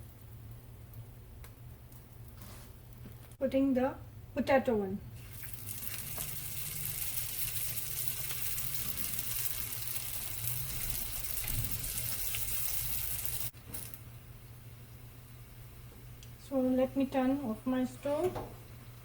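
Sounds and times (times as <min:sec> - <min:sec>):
food sizzling in hot oil: 0:05.2 - 0:14.0.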